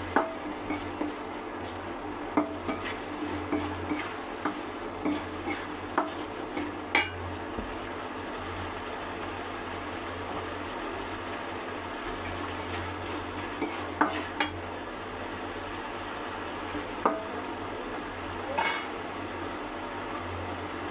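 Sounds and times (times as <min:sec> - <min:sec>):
metal spoon scraping cooking pot: 0:02.4 - 0:05.8, 0:13.6 - 0:14.6, 0:18.5 - 0:19.0.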